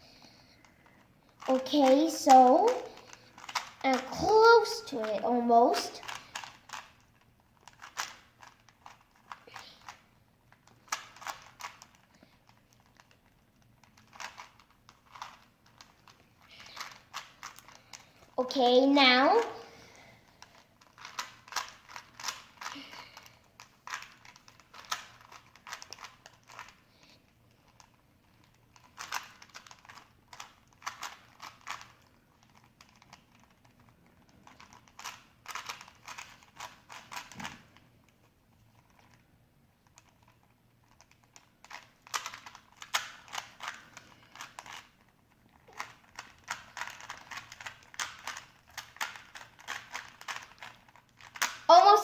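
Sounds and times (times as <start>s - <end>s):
puzzle cube layers clicking: 1.4s - 10.0s, 10.6s - 18.0s, 45.7s - 52.0s.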